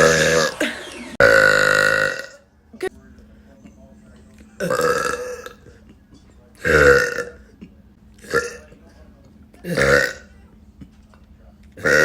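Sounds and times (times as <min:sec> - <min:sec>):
woman burping: 0:01.2 - 0:02.4, 0:04.6 - 0:05.6, 0:06.6 - 0:07.4, 0:09.6 - 0:10.3.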